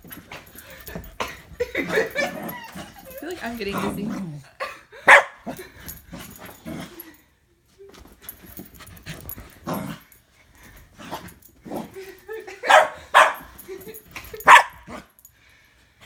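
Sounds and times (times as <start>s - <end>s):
dog barking: 5.1s - 5.4s, 12.6s - 13.5s, 14.4s - 15.0s.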